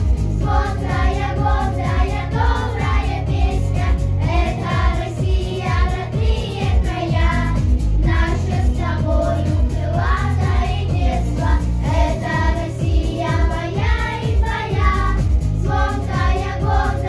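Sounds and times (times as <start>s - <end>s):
instrumental accompaniment with beat: 0.0s - 17.0s
children singing in unison: 0.4s - 17.0s.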